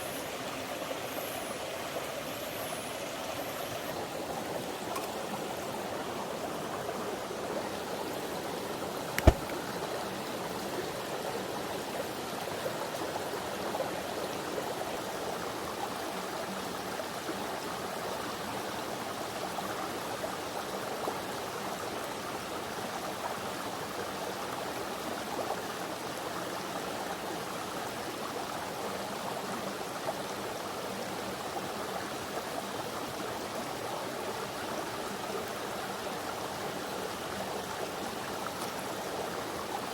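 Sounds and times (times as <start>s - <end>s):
sharp click: 9.2s - 9.6s
water rushing over rocks: 9.2s - 9.7s.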